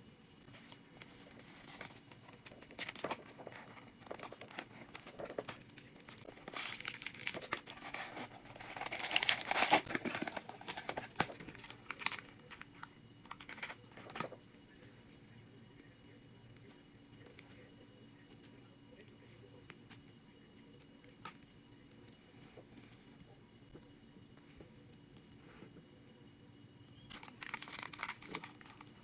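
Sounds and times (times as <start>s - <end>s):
packaging crinkling and tearing: 1.0s - 14.4s, 27.1s - 29.0s.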